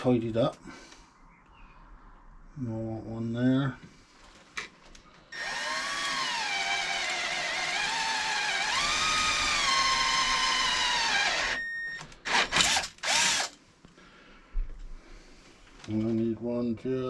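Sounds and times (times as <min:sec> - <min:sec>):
electric drill whining: 0:05.3 - 0:13.6.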